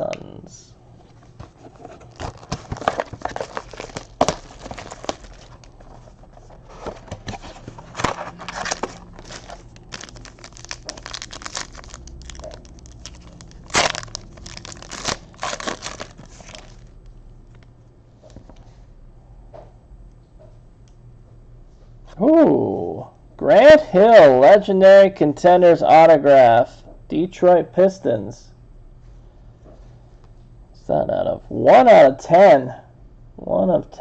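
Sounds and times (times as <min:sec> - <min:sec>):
plastic wrapper crinkling and tearing: 0:01.7 - 0:17.6.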